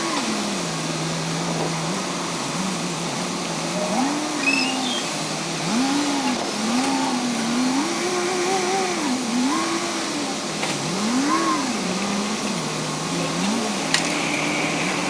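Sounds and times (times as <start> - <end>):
diesel engine of heavy machine: 0.0 - 15.0.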